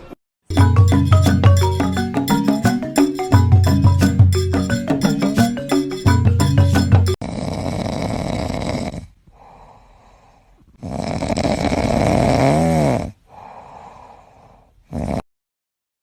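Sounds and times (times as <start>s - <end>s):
animal snoring loudly: 7.2s - 9.1s, 10.8s - 13.2s, 14.9s - 15.2s.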